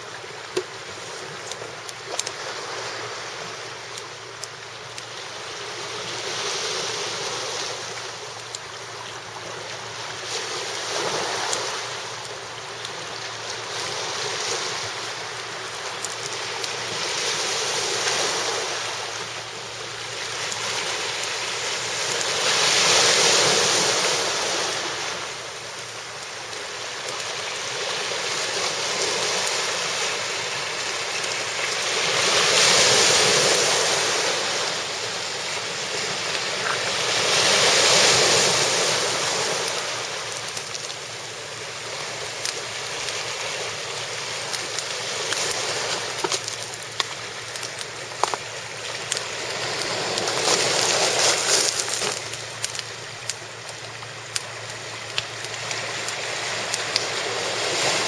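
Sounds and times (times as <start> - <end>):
waves washing onto shore: 0.0 - 58.0.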